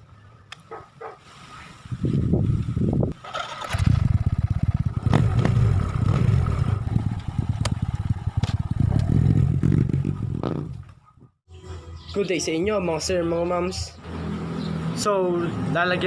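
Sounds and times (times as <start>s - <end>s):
motorcycle engine running loudly: 3.3s - 10.7s.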